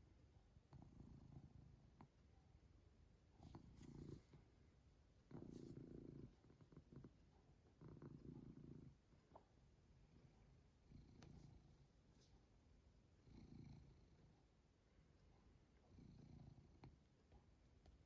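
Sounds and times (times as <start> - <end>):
cat purring deeply: 3.4 - 4.5, 5.3 - 9.1, 13.2 - 14.3, 15.9 - 16.9.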